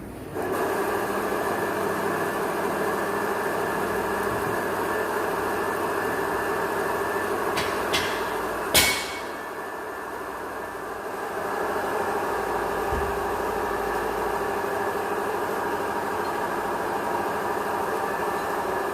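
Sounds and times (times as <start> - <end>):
sharp knock: 7.6 - 9.4.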